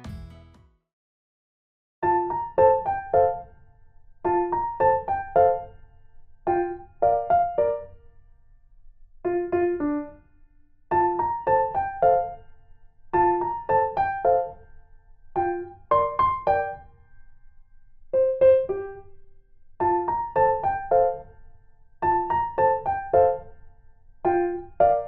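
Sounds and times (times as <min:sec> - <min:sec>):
piano-like keyboard music: 0:00.0 - 0:00.6, 0:02.0 - 0:03.6, 0:04.2 - 0:05.8, 0:06.4 - 0:08.0, 0:09.3 - 0:10.2, 0:10.9 - 0:12.5, 0:13.1 - 0:14.8, 0:15.4 - 0:17.0, 0:18.1 - 0:19.2, 0:19.8 - 0:21.4, 0:22.0 - 0:23.6, 0:24.2 - 0:25.0.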